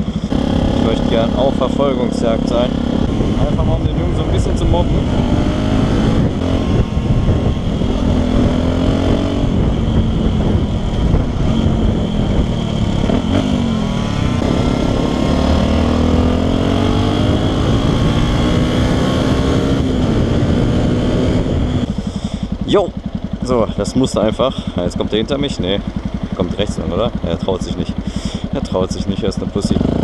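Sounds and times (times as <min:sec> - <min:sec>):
motorcycle engine accelerating: 0:00.0 - 0:30.0
wind rush: 0:00.3 - 0:22.6.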